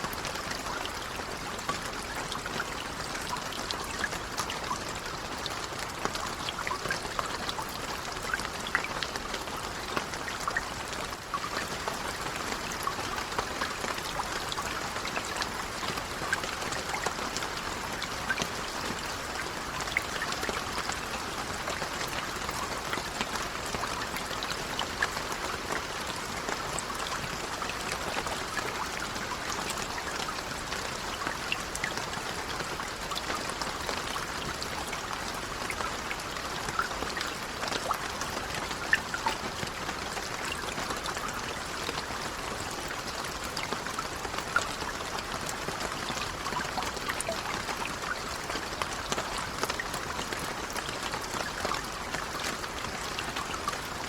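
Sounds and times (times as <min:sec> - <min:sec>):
gentle rain falling: 0:00.0 - 0:54.0.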